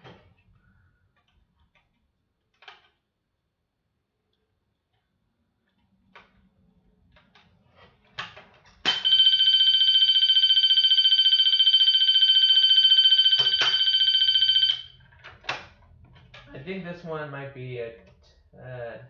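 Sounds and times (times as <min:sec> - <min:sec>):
shrill electronic alarm tone: 0:08.9 - 0:15.0.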